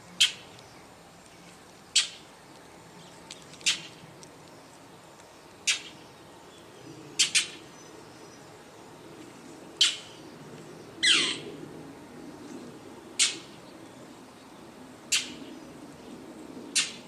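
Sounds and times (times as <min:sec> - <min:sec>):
fledgling bird begging squawks: 0:11.0 - 0:11.5.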